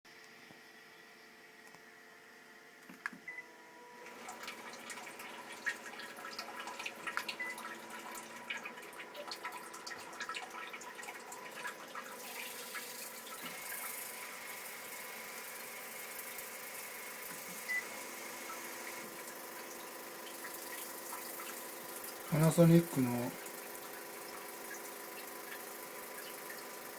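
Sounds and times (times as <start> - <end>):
faint motor tone: 0.1 - 26.9
nozzle spraying water: 4.1 - 26.9.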